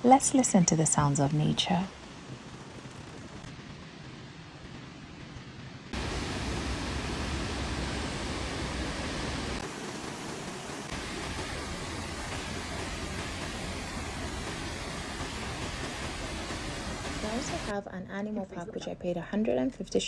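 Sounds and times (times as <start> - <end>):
waterfall rushing: 6.0 - 17.7.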